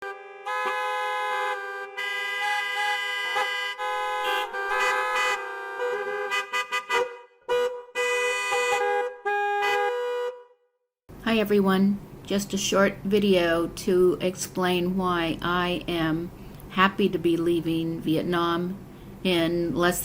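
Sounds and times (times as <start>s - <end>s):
short horn toots: 0.0s - 10.6s
vehicle horns honking: 0.0s - 10.7s.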